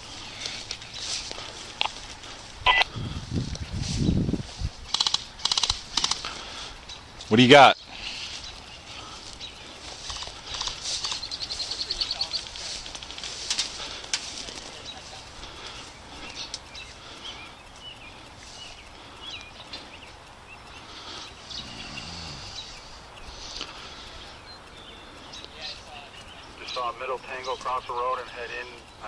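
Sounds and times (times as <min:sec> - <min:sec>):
rapid ticks: 0:00.0 - 0:03.7, 0:04.4 - 0:29.0
birds chirping and calling: 0:00.0 - 0:29.0
sharp clicks: 0:04.9 - 0:07.3, 0:09.3 - 0:11.6, 0:12.3 - 0:14.7, 0:15.6 - 0:21.9, 0:22.5 - 0:29.0.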